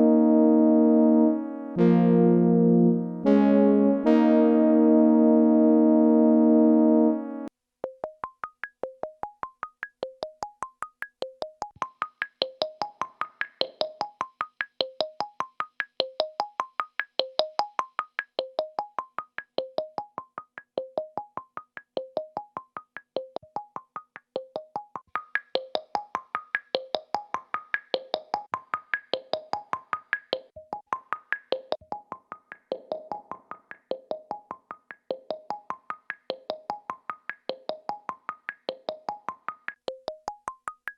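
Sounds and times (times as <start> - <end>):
synthesizer arpeggio: 0.0 - 7.5.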